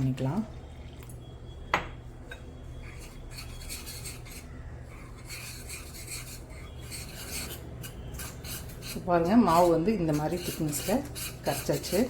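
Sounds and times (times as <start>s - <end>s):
utensil stirring batter on a plate: 2.4s - 12.0s.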